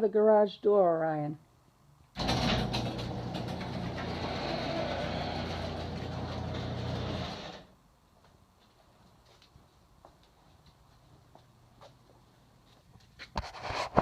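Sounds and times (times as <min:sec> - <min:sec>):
door rattling: 0:02.2 - 0:07.7
garage door opener motor: 0:02.2 - 0:07.7.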